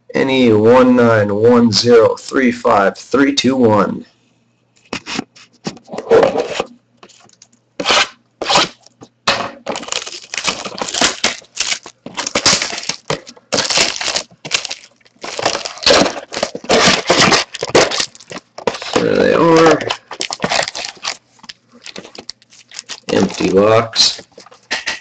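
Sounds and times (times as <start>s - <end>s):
cardboard box wrapping tearing: 7.8s - 8.8s, 9.7s - 21.2s, 21.8s - 24.4s.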